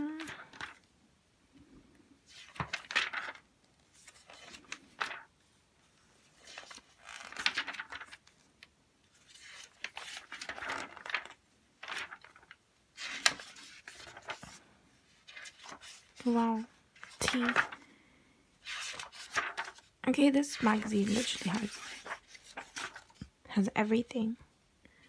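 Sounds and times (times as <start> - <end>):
magazine pages turning: 0.2 - 0.8, 2.3 - 5.3, 6.2 - 17.8, 18.6 - 23.3.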